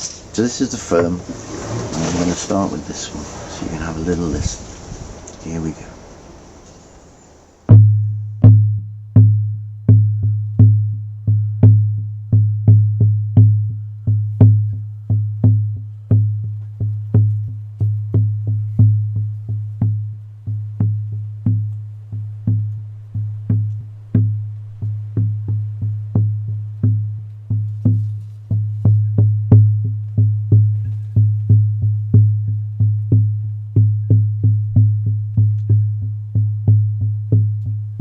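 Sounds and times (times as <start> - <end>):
frame drum booming strokes: 0.0 - 37.8.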